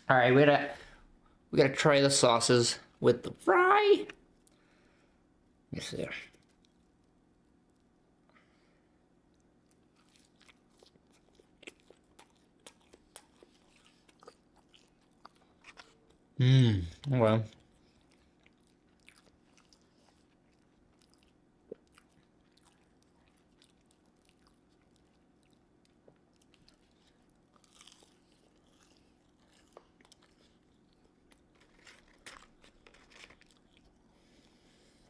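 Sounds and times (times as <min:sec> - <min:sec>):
person chewing food: 0:09.2 - 0:35.0.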